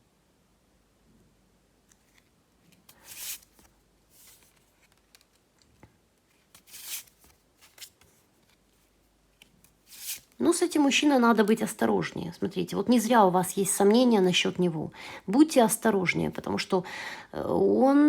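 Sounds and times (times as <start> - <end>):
cards swishing and tapping: 2.0 - 5.4, 6.3 - 8.7, 9.4 - 10.4.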